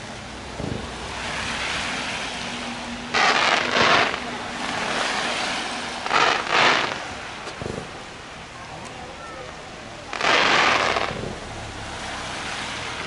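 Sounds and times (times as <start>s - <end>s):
fireworks hissing bursts: 0.5s - 8.2s, 10.0s - 11.4s
firework boom: 0.6s - 1.3s.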